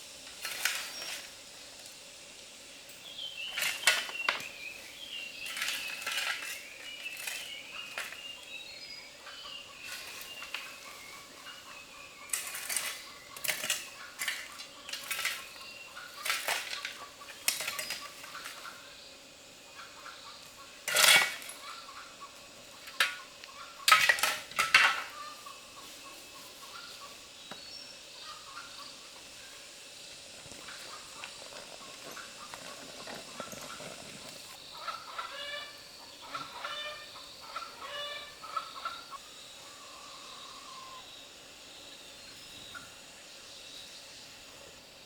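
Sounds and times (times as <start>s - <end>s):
poultry calling: 25.0s - 27.2s, 30.6s - 41.1s.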